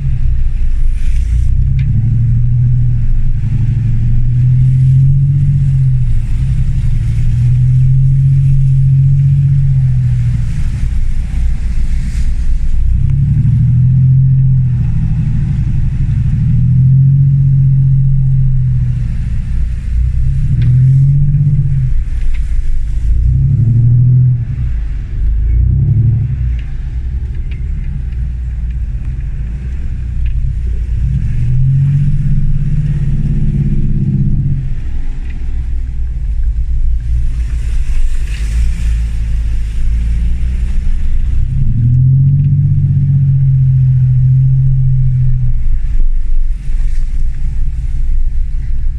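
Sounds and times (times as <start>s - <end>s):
diesel engine revving: 0.0s - 48.9s.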